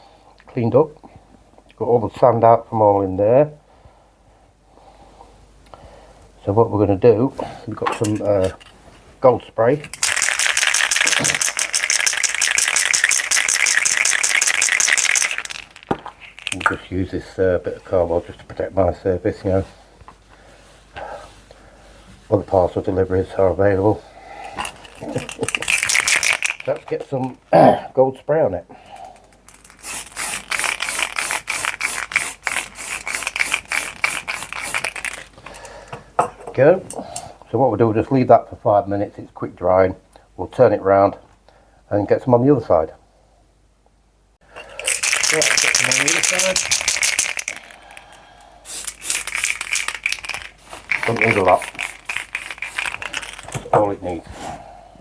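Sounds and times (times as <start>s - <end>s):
spray can rattling while shaken: 9.9s - 16.9s, 24.7s - 27.3s, 29.2s - 35.4s, 44.8s - 48.1s, 48.7s - 53.7s.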